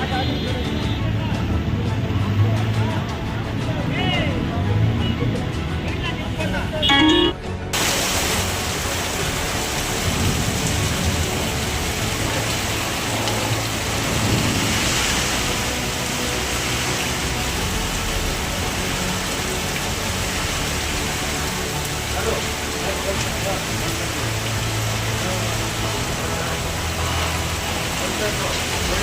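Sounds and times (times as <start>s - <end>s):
heavy rain pouring: 7.0s - 29.0s.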